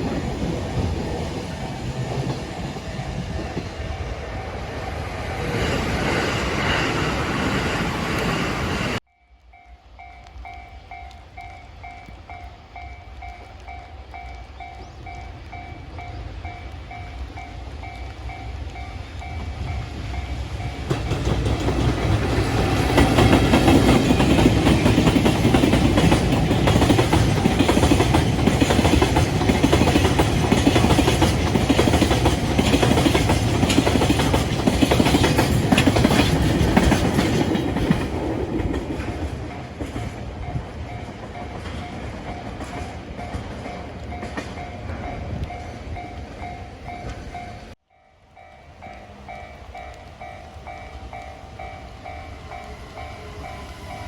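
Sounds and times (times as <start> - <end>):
train wheels clacking on rail joints: 19.2 - 47.5
crossing warning bell ringing: 39.4 - 54.0.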